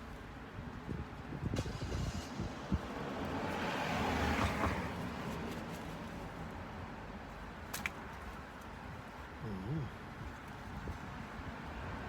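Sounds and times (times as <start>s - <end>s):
car passing by: 1.6s - 5.8s.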